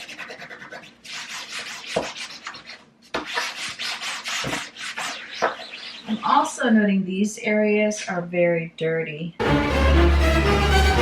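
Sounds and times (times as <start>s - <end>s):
rag scrubbing a surface: 0.0s - 6.2s.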